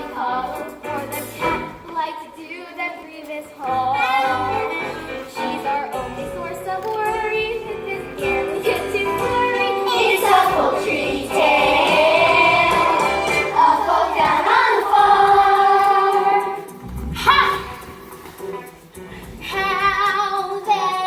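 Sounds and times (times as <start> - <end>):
chorus of young voices singing: 9.8 - 16.8.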